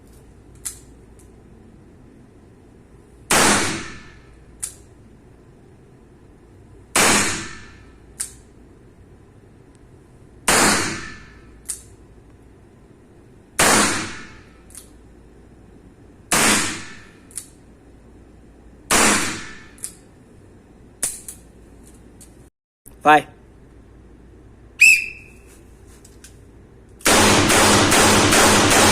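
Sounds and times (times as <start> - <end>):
gunshots with ringing tail: 27.1 - 28.9.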